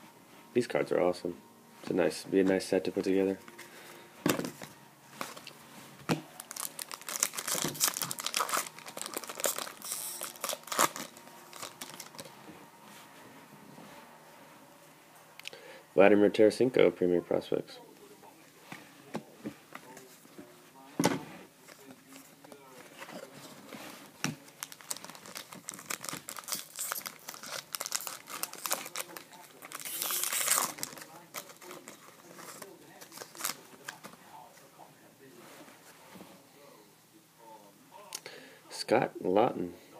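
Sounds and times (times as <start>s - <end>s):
foil wrapper crinkling and tearing: 6.4s - 12.3s, 24.4s - 34.1s.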